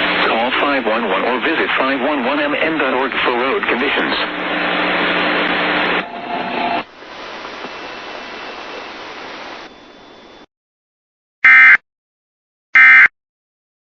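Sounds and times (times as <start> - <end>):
radio static hiss: 0.0 - 10.4.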